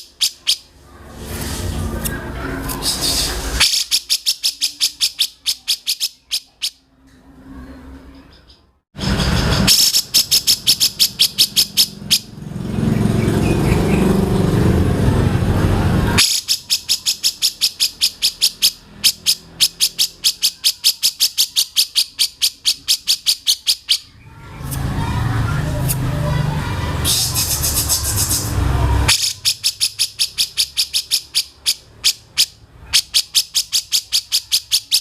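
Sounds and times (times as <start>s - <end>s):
songbird chattering: 0.0s - 0.7s, 2.8s - 6.8s, 9.2s - 12.3s, 16.2s - 24.2s, 27.0s - 35.0s.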